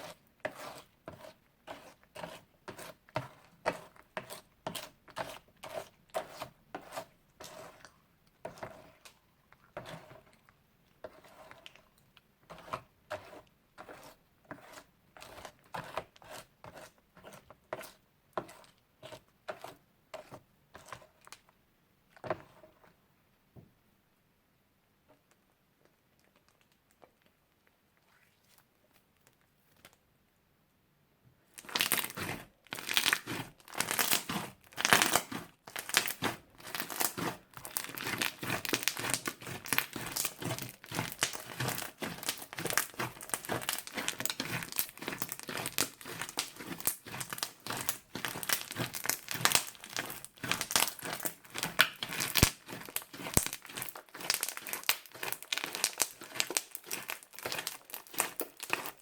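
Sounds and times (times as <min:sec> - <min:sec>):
crunchy slime crackling and popping: 0:31.6 - 0:59.0.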